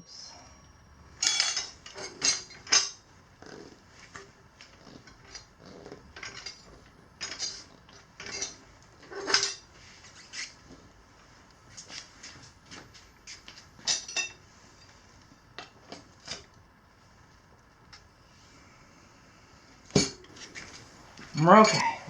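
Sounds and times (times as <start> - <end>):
tire irons clinking on rim: 1.0 - 3.1, 4.0 - 10.6.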